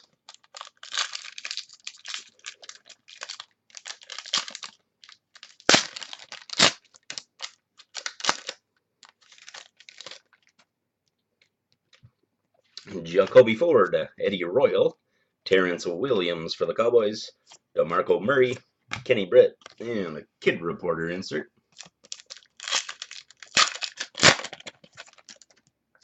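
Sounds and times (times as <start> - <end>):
foil wrapper crinkling and tearing: 0.0 - 10.6, 21.8 - 25.6
cards rustling and scraping: 0.0 - 10.7, 21.8 - 25.7.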